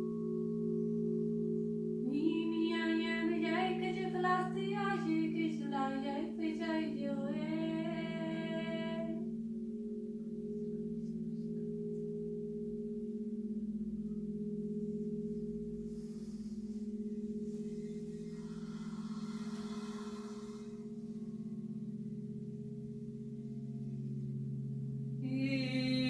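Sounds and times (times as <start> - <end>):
crystal singing bowls ringing: 0.0 - 26.0
person singing wordless melody: 2.0 - 9.3, 25.2 - 26.0.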